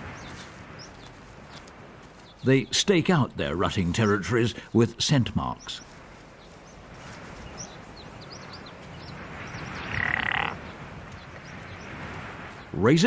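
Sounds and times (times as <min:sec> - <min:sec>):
raspy animal call: 0:09.8 - 0:10.6.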